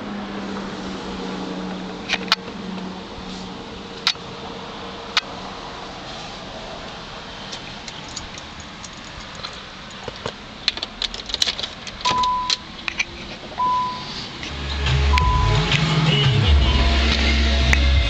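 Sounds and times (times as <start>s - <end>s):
car keys jangling and clicking: 7.5s - 14.5s
car warning chime beeps: 12.0s - 12.7s, 13.6s - 14.2s, 15.1s - 15.7s
low rumbling sound: 13.5s - 18.0s.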